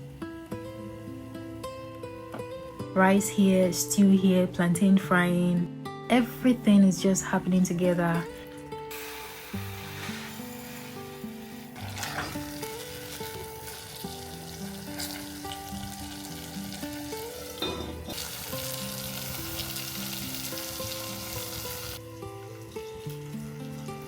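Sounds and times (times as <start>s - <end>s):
background music: 0.0s - 24.0s
plantain frying in hot oil: 8.9s - 24.0s.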